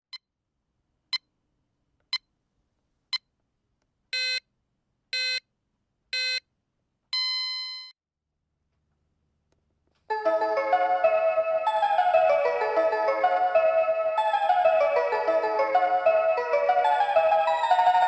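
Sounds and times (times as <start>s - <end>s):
alarm clock electronic beeps: 4.1s - 4.4s, 5.1s - 5.5s, 6.1s - 6.5s, 7.1s - 8.0s.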